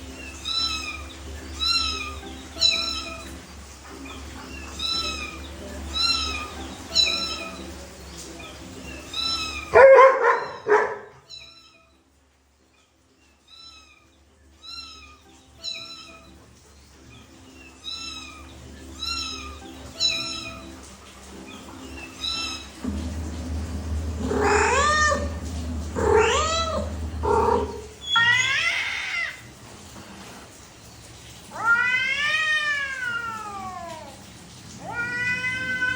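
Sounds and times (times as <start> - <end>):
animal high-pitched cries: 0.0 - 7.7, 8.4 - 12.0, 13.4 - 16.4, 17.1 - 20.8, 21.4 - 22.8, 24.2 - 29.5, 31.5 - 34.2, 34.8 - 35.9.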